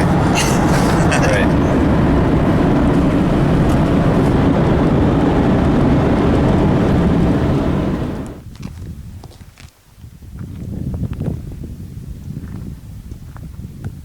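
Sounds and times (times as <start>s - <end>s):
car engine and road noise rumble: 0.0s - 8.5s.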